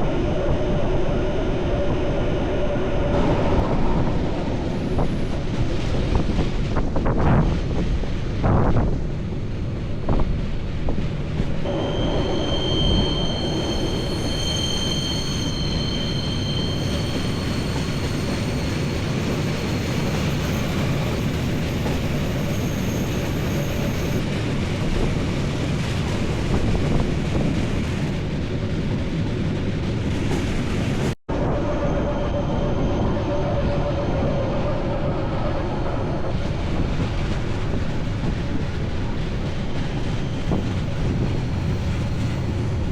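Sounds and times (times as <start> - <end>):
rail vehicle rumble: 0.0 - 42.9
wheels squealing: 11.6 - 24.2.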